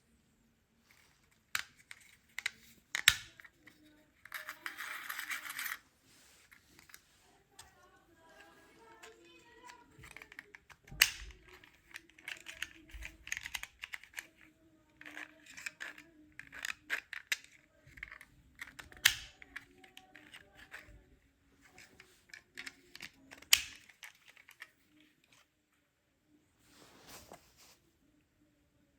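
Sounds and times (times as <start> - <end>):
plastic clicks and rattles: 1.2 - 5.8, 8.4 - 25.4
loud plastic snaps: 10.0 - 11.6, 18.8 - 19.6, 23.4 - 24.6.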